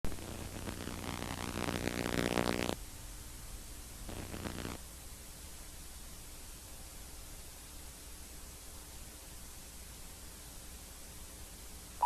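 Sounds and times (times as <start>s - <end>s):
distorted electronic buzzing: 0.0s - 2.8s, 4.1s - 4.8s
static hiss: 0.0s - 12.0s.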